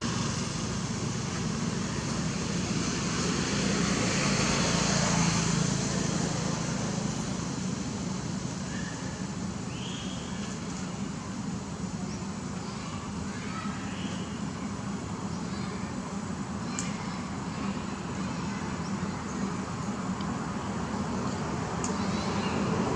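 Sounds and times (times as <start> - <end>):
vehicle passing: 0.0 - 8.4
road traffic noise: 0.0 - 22.9.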